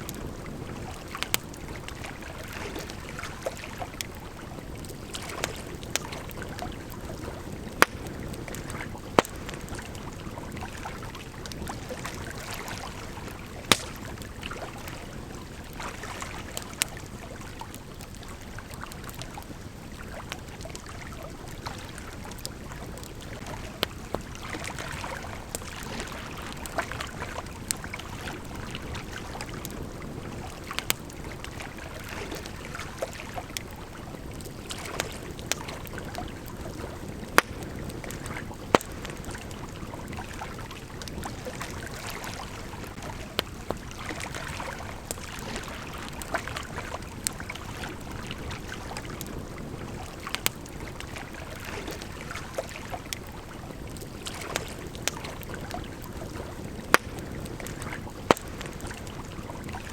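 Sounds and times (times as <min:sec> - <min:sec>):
campfire crackling and popping: 0:00.0 - 0:59.9
river flowing: 0:00.0 - 0:59.9.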